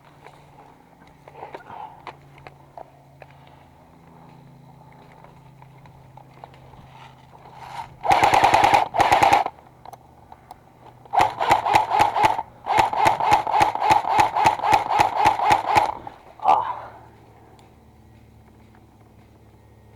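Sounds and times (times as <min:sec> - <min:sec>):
gun mechanism whining: 0:07.0 - 0:16.4
airsoft gun firing bursts: 0:07.6 - 0:09.6, 0:11.1 - 0:16.3.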